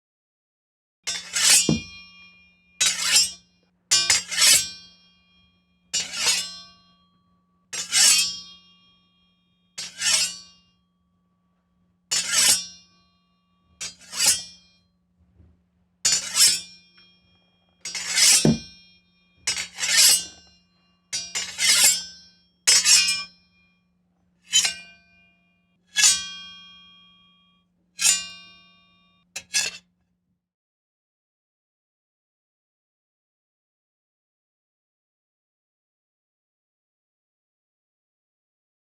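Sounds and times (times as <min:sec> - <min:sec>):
sword scraping in scabbard: 0:17.9 - 0:18.8, 0:29.4 - 0:29.9.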